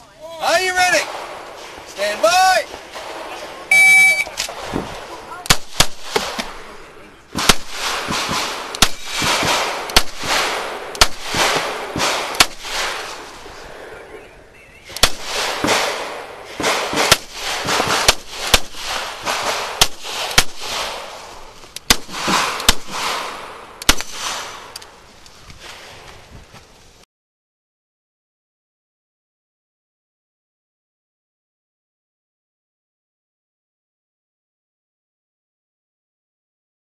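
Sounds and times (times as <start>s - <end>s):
pistol shots: 5.5s - 6.6s, 7.4s - 13.2s, 14.9s - 21.2s, 21.9s - 24.8s.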